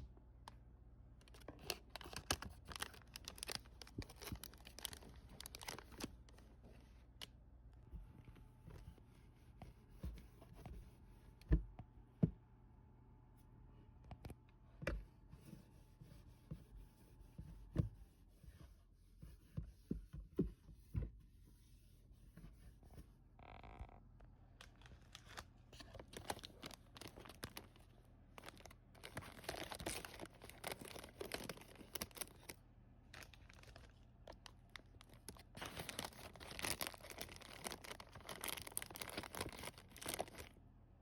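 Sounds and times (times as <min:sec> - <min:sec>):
rustling and crinkling: 0:01.2 - 0:07.3, 0:24.6 - 0:40.6.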